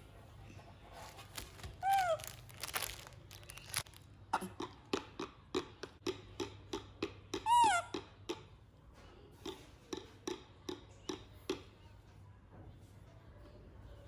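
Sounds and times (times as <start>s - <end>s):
rustling: 0.8s - 4.0s
baby monkey squeaky call: 7.5s - 7.9s.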